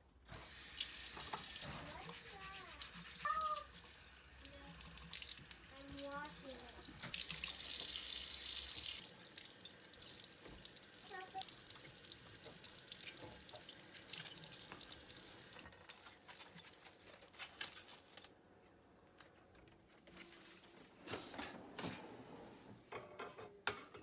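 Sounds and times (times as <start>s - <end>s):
tap water splashing into sink: 0.4s - 15.8s.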